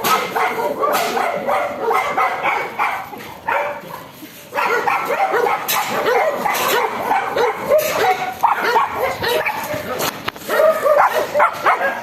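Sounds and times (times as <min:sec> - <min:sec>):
dogs barking and yipping: 0:00.0 - 0:12.0.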